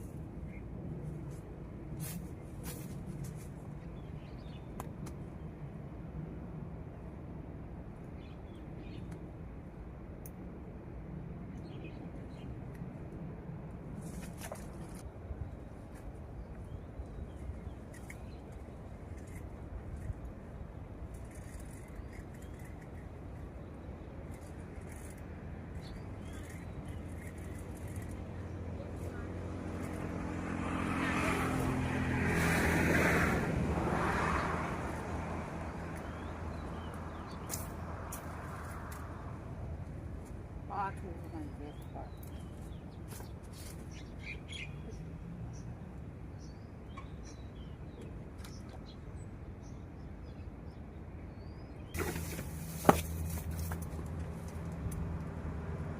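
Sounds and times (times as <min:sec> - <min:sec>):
motor vehicle passing by: 0:25.9 - 0:39.6, 0:52.0 - 0:55.9.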